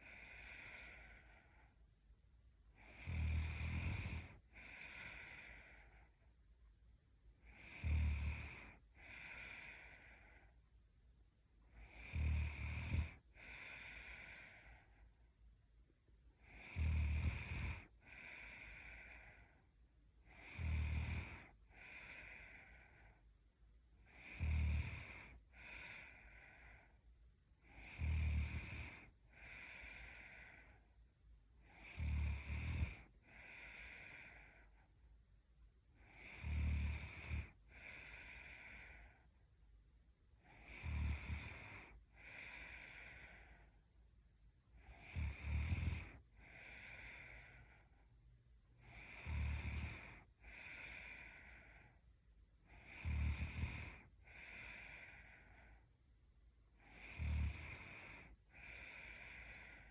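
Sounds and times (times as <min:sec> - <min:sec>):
woman snoring: 0:00.0 - 0:01.7, 0:02.8 - 0:06.2, 0:07.4 - 0:10.5, 0:11.7 - 0:15.0, 0:16.4 - 0:19.6, 0:20.2 - 0:23.2, 0:24.0 - 0:27.0, 0:27.6 - 0:30.8, 0:31.6 - 0:34.8, 0:35.9 - 0:39.3, 0:40.4 - 0:43.8, 0:44.6 - 0:48.0, 0:48.7 - 0:52.0, 0:52.6 - 0:55.8, 0:56.7 - 0:59.9.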